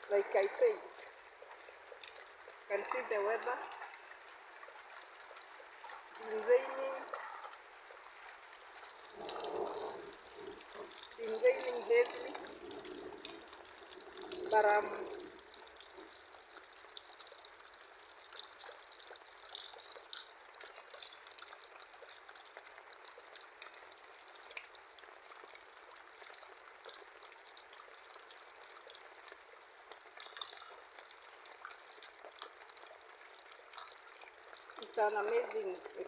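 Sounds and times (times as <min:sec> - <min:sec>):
water drips and splashes: 0:00.0 - 0:36.0
water pouring off gutters: 0:00.0 - 0:36.0
heavy rain falling: 0:08.6 - 0:16.4.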